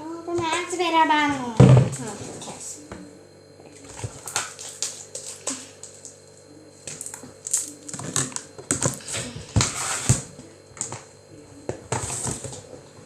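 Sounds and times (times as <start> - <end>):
slime squishing with sticky pops: 3.9 - 6.2.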